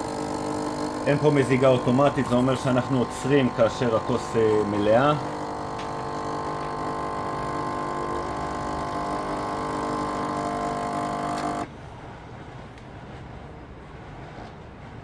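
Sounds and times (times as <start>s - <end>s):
espresso machine pump humming: 0.0s - 11.7s.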